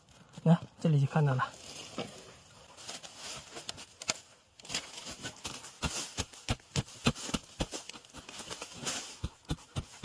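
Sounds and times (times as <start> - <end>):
hoe chopping into soil: 4.7 - 10.0.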